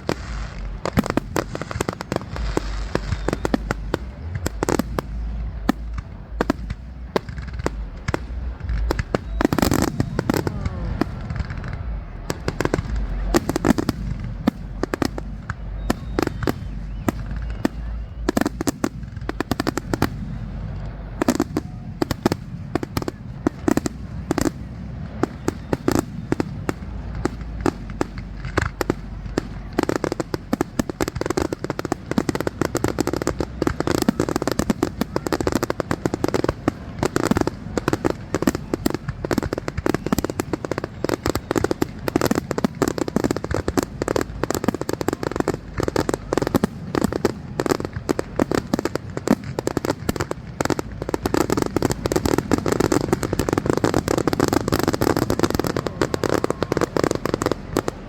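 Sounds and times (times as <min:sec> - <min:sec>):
fireworks bangs and crackles: 0:00.0 - 0:58.0.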